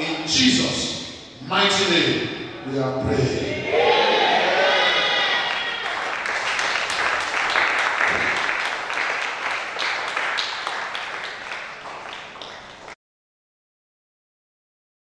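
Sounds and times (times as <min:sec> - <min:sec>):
congregation clapping: 0:04.6 - 0:13.0.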